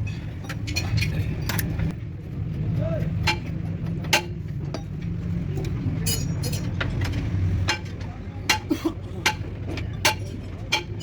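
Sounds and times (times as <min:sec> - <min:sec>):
metal spanners clinking: 0:00.0 - 0:01.8, 0:05.9 - 0:11.0.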